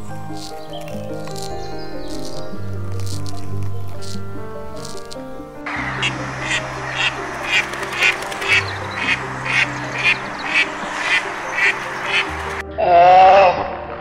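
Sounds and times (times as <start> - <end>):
background music: 0.0 - 14.0
duck quacking: 5.7 - 12.6.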